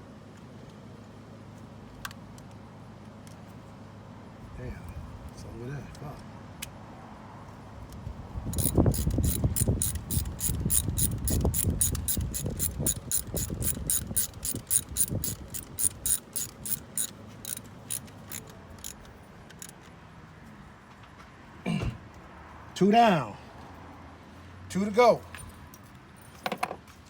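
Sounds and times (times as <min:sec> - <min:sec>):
socket ratchet clicking: 0:08.5 - 0:19.8.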